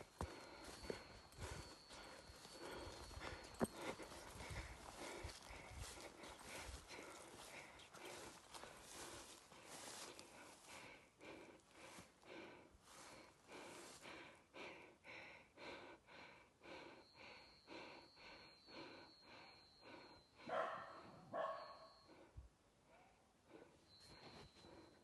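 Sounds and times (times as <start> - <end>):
footsteps walking: 0.0 - 11.0
rough breathy sounds: 0.0 - 21.2
faint breathing: 0.0 - 25.0.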